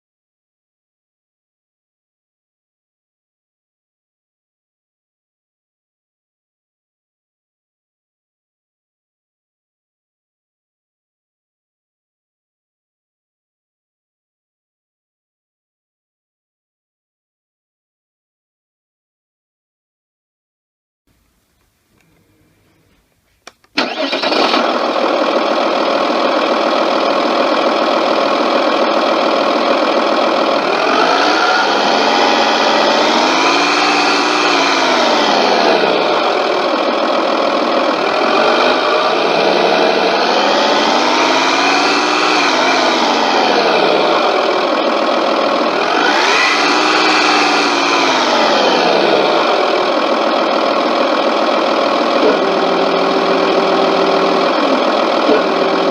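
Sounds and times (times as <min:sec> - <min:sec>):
simulated tank engine from speaker: 0:23.9 - 0:55.9.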